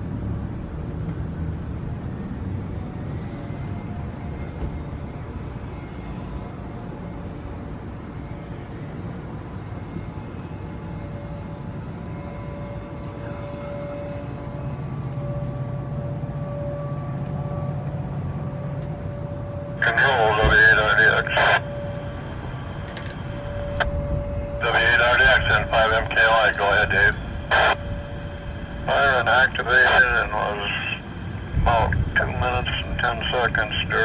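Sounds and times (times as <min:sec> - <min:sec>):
faint steady tone: 0:05.1 - 0:34.0
low outdoor rumble: 0:15.2 - 0:34.0.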